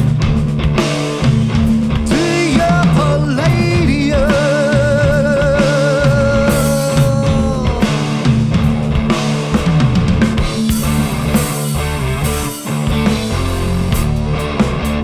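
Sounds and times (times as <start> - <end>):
bass and drums: 0.0 - 15.0
sliding lead melody: 10.4 - 14.6.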